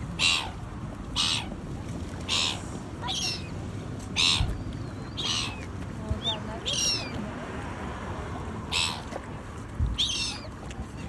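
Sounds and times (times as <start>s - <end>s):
bird calling harshly: 2.3s - 3.5s, 4.2s - 7.2s, 8.7s - 9.1s, 10.0s - 10.5s.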